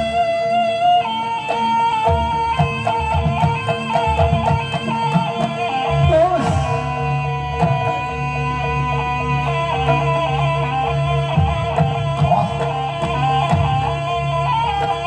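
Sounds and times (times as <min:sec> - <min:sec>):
ornamented folk melody over drone: 0:00.0 - 0:15.0
drum strokes: 0:01.9 - 0:08.4, 0:09.5 - 0:15.0.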